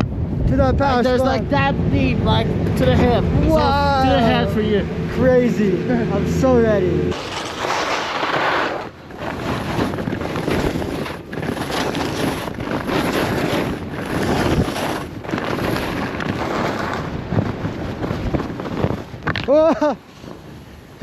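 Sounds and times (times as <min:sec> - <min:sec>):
wind buffeting microphone: 0:00.0 - 0:21.0
skis hissing through snow: 0:07.2 - 0:17.1.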